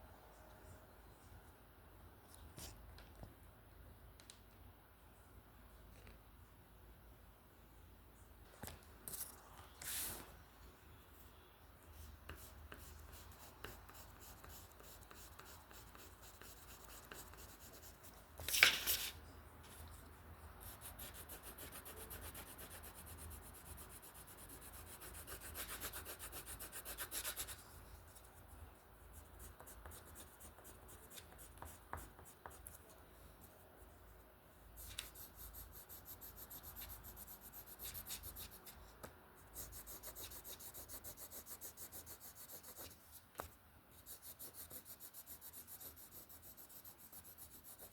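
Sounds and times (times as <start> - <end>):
drawing tool scratching paper: 12.3 - 18.0, 20.6 - 27.6, 34.8 - 38.8, 39.5 - 43.0, 44.0 - 47.9
paper rustle: 18.4 - 19.2.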